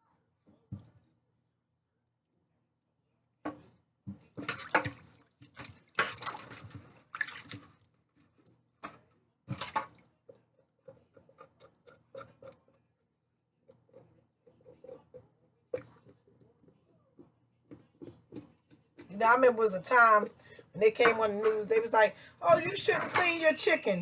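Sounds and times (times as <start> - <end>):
water splashing in a sink: 4.1 - 12.6.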